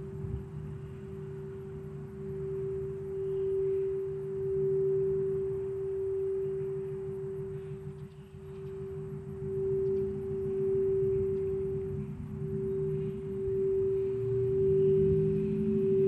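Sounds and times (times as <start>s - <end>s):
low background rumble: 0.0s - 16.0s
singing bowl sustained tone: 0.0s - 16.0s.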